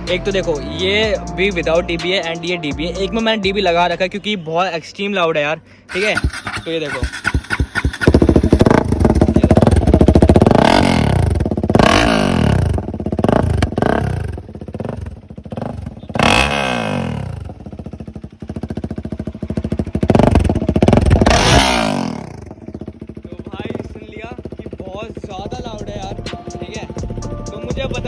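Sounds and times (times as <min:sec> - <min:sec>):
motorcycle engine revving: 0:05.9 - 0:28.0.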